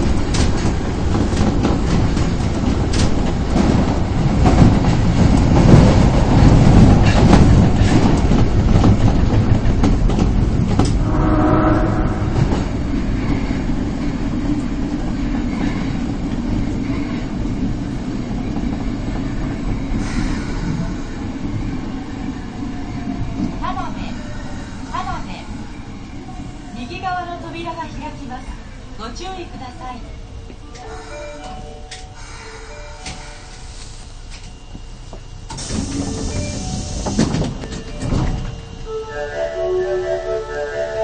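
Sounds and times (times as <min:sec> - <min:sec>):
rail joint clicks: 0:00.0 - 0:11.7, 0:30.4 - 0:38.9
train wheel and track rumble: 0:00.0 - 0:41.0
brief whine: 0:11.0 - 0:13.3.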